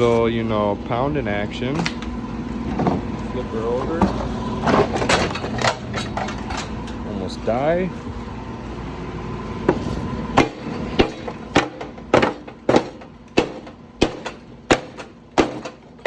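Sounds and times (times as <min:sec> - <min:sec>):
low steady hum: 0:00.0 - 0:16.0
hammer striking metal bumper: 0:10.4 - 0:16.0.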